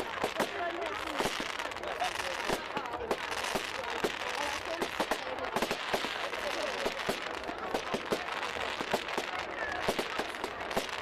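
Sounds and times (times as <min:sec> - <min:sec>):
fireworks banging: 0:00.0 - 0:11.0.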